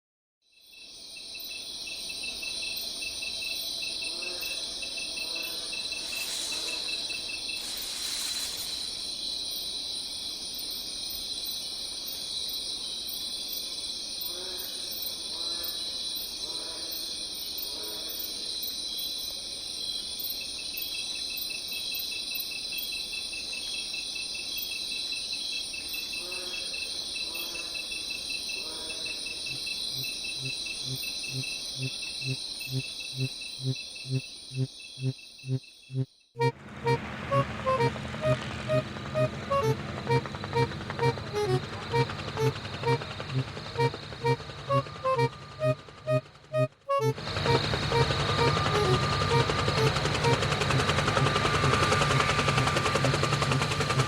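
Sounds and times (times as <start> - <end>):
crickets chirping: 0.5 - 53.9
faint lower insect calls: 0.5 - 54.0.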